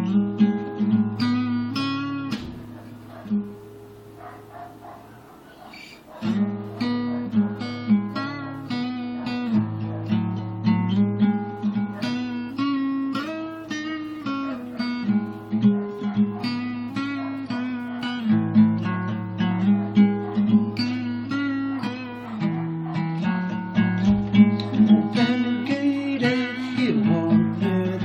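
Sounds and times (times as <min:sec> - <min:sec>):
acoustic guitar strumming: 0:00.0 - 0:28.0.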